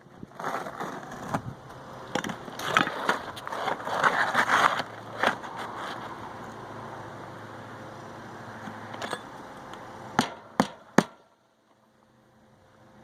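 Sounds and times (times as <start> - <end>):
roofing shingles scraping: 0.0 - 6.2
sharp knocks: 10.2 - 11.2.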